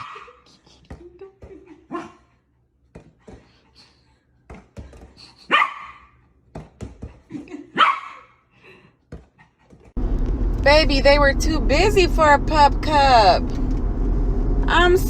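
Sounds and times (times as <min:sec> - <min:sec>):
dog barking: 0:00.0 - 0:00.4, 0:01.9 - 0:02.3, 0:05.5 - 0:06.2, 0:07.7 - 0:08.4.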